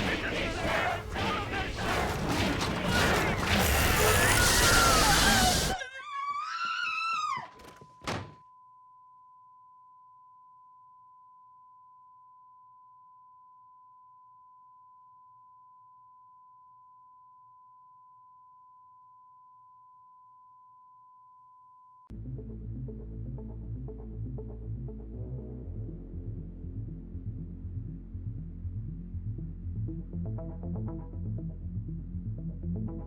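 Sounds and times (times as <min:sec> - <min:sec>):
high-pitched wailing cry: 0:04.0 - 0:07.6
thump: 0:08.0 - 0:08.4
low music drone: 0:22.1 - 0:33.0.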